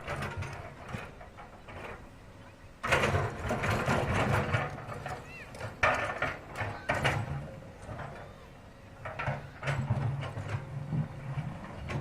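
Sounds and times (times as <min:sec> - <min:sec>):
excavator diesel engine rumbling: 0:00.0 - 0:12.0.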